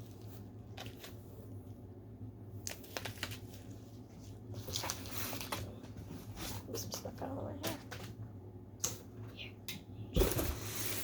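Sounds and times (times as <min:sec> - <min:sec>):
packages and paper rustling: 0:00.0 - 0:01.4, 0:02.6 - 0:07.0, 0:10.2 - 0:11.0.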